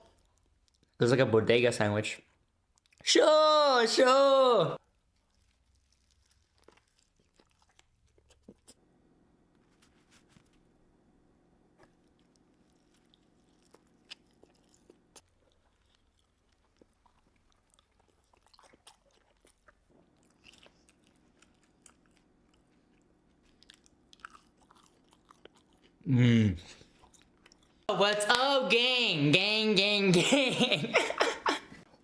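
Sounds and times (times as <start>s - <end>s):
faint chewing and crunching: 0.0s - 1.0s, 2.2s - 3.1s, 4.8s - 27.9s.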